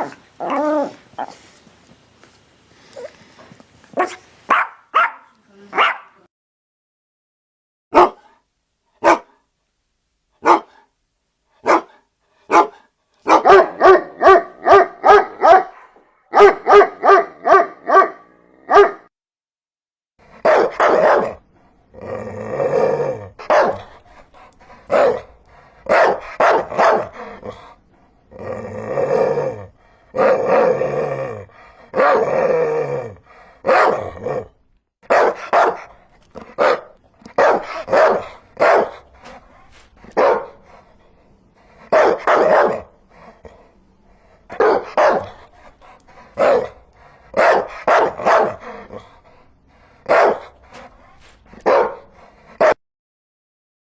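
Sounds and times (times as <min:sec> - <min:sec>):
dog barking: 0:04.0 - 0:06.3, 0:07.9 - 0:08.4, 0:09.0 - 0:09.4, 0:10.4 - 0:10.9, 0:11.6 - 0:19.1, 0:20.3 - 0:21.4, 0:23.4 - 0:24.0, 0:24.9 - 0:27.6, 0:31.9 - 0:32.3, 0:33.6 - 0:34.4, 0:35.0 - 0:39.4, 0:40.1 - 0:40.8, 0:41.8 - 0:43.0, 0:44.5 - 0:45.5, 0:46.4 - 0:49.1, 0:50.0 - 0:50.9, 0:51.5 - 0:52.8.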